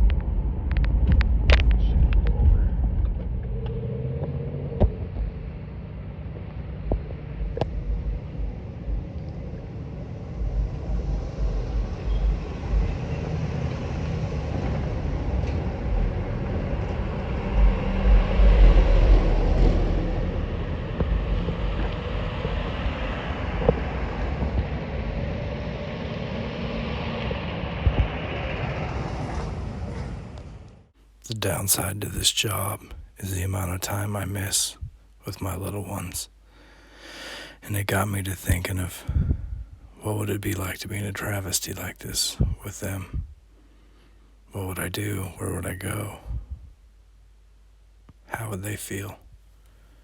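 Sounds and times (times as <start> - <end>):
uneven low thumps: 0.0 - 13.5, 14.5 - 25.2, 42.4 - 43.4
vehicle rumbling on the move: 0.0 - 31.9.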